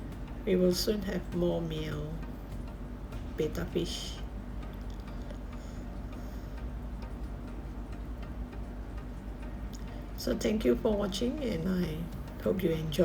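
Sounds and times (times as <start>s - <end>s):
faint regular ticking: 0.0s - 13.0s
steady low hum: 0.0s - 13.0s.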